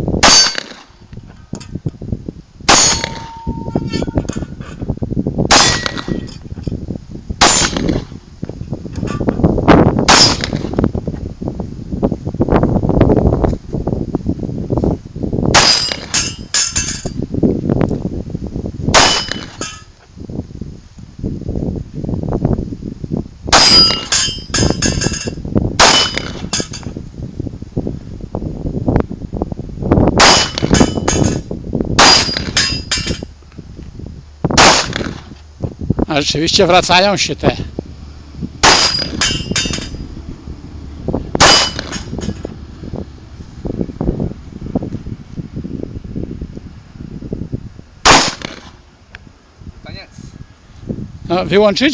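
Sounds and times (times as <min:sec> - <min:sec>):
pistol shots: 0:02.7 - 0:03.4, 0:05.5 - 0:06.2, 0:07.4 - 0:08.1, 0:10.1 - 0:10.7, 0:18.9 - 0:19.7, 0:25.8 - 0:26.5, 0:30.2 - 0:31.2, 0:34.6 - 0:35.2, 0:38.6 - 0:39.8, 0:41.4 - 0:42.0, 0:48.0 - 0:48.7
metallic clanging ring: 0:02.7 - 0:04.7, 0:15.6 - 0:17.2, 0:19.1 - 0:19.9, 0:23.6 - 0:25.4, 0:32.1 - 0:33.3, 0:38.7 - 0:40.1, 0:41.4 - 0:42.5
brief metallic ring: 0:02.8 - 0:04.4.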